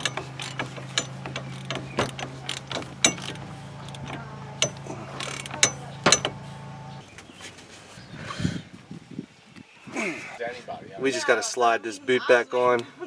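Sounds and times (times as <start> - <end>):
ratchet clicking: 0.0 - 7.0.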